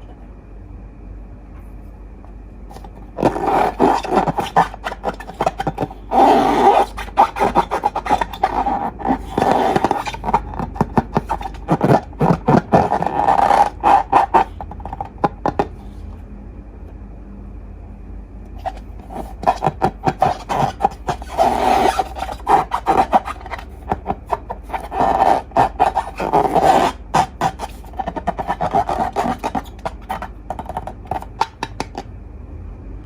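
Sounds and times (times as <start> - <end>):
balloons squeaking under handling: 2.7 - 15.6, 18.6 - 32.0.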